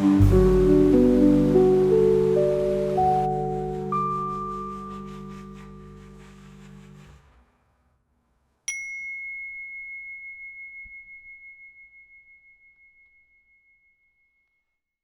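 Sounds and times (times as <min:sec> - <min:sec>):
mallet instrument music: 0:00.0 - 0:04.4
high bell-like chime: 0:08.7 - 0:14.7.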